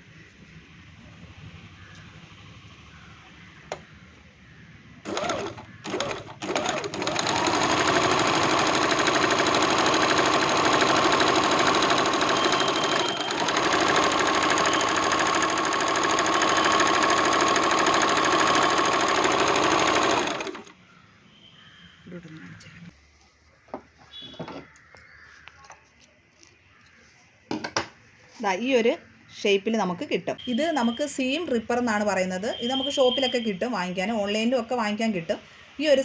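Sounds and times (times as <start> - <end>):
sewing machine stitching: 5.0 - 20.7.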